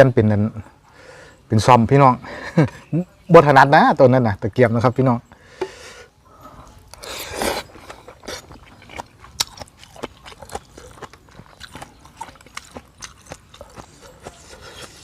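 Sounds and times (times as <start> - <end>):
wet chewing smacks: 6.9 - 15.0
person slurping soup: 7.0 - 8.8.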